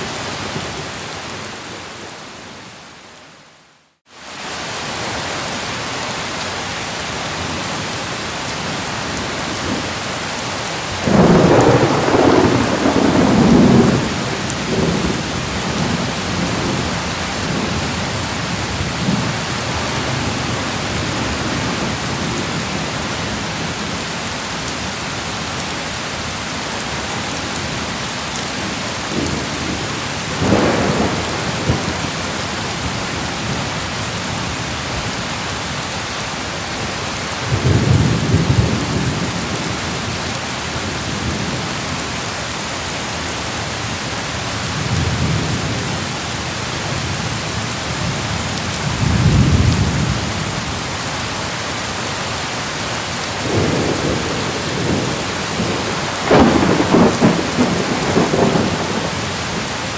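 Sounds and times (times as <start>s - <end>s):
rain hissing: 3.7s - 41.8s
thunder rolling: 11.0s - 17.8s, 28.6s - 32.9s, 53.4s - 59.2s.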